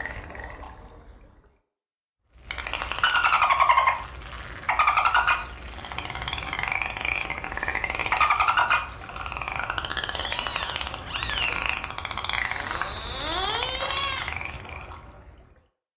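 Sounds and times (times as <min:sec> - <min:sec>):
dolphin whistles: 0:10.0 - 0:14.6.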